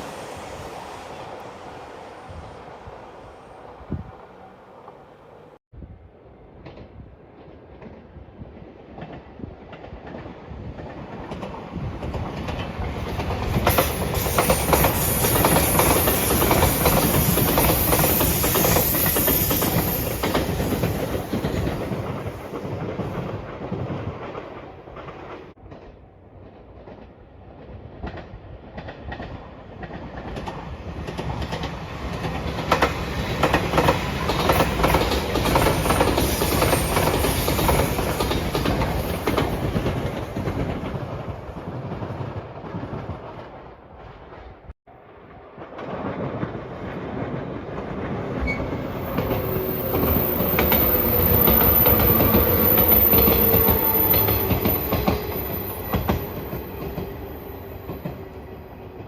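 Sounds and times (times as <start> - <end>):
electric train passing: 0.0 - 8.9, 10.3 - 43.5, 44.9 - 59.0
wheels clattering over rail joints: 28.8 - 41.1
train whine falling in pitch: 48.3 - 59.0.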